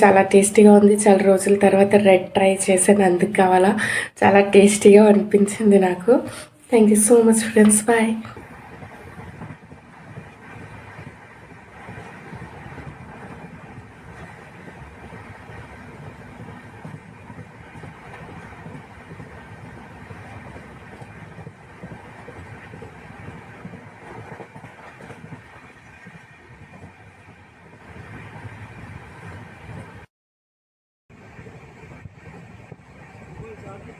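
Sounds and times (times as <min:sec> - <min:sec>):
faint clatter: 0:07.5 - 0:30.0.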